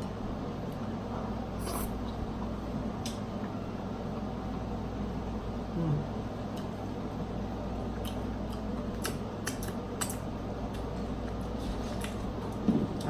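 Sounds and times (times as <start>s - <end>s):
steady low hum: 0.0s - 13.0s
eating clicks and crackles: 8.0s - 13.0s.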